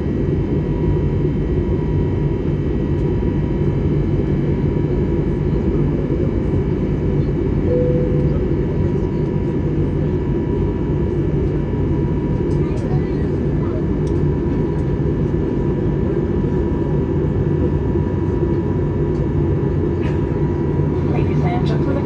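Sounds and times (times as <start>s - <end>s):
airplane cabin drone: 0.0s - 22.0s
faint steady tone: 7.7s - 8.4s.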